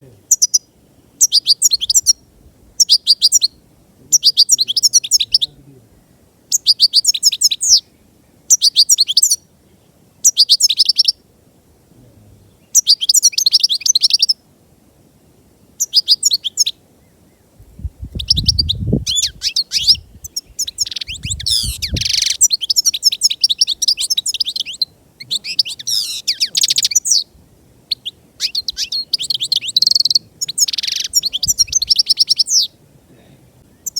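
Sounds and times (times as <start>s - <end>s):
goldfinch twittering song: 0.3s - 2.2s, 2.8s - 5.5s, 6.5s - 7.9s, 8.5s - 9.4s, 10.2s - 11.2s, 12.6s - 14.4s, 15.8s - 17.4s, 18.0s - 27.3s, 27.9s - 32.7s.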